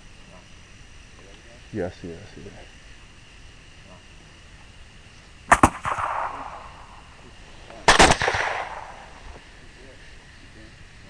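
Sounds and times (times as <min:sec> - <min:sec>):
rifle shots with echo: 0:05.5 - 0:07.1, 0:07.8 - 0:09.3.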